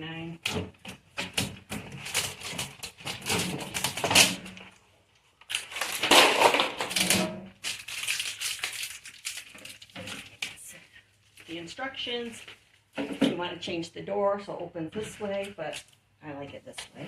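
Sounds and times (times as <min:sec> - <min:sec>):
packaging crinkling and crushing: 0:01.6 - 0:10.6.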